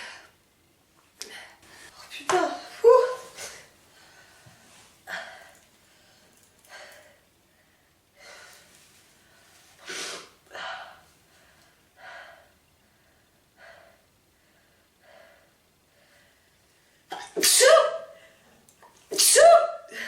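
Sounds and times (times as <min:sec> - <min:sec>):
woman sneezing: 0:17.1 - 0:18.2, 0:19.1 - 0:20.0.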